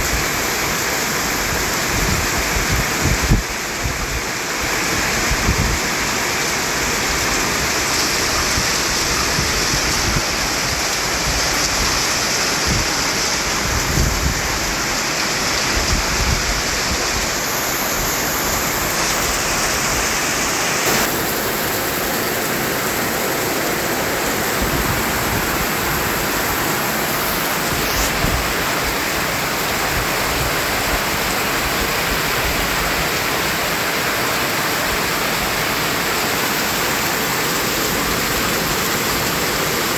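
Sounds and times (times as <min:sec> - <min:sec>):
white noise hiss: 0:13.6 - 0:39.9.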